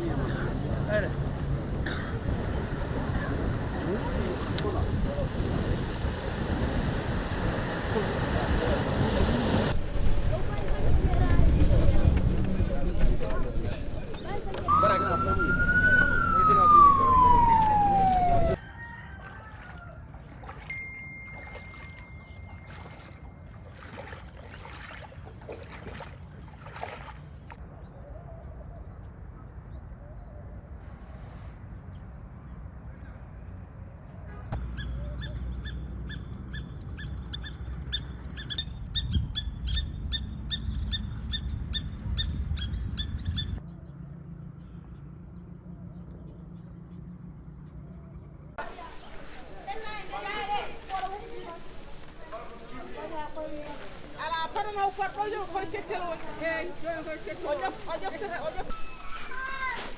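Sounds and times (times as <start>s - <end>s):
bird chirping rapidly: 34.7s - 43.6s.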